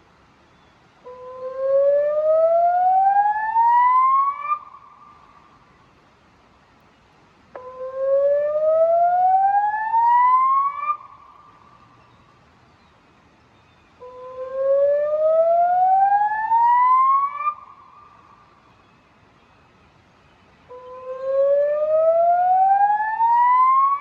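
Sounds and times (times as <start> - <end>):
siren echo: 14.5 - 17.7, 21.0 - 24.0.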